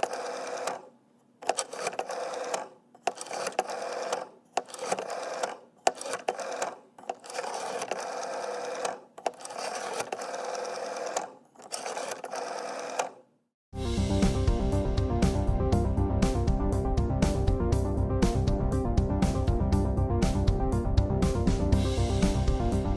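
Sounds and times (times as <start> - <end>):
rotary dial clicks: 0.0 - 13.2
rotary dial whirring: 0.0 - 13.3
music: 13.7 - 22.9.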